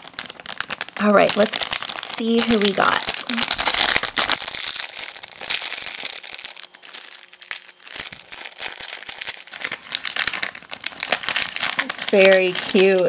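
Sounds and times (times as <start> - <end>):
foil packet crinkling: 0.0 - 13.0.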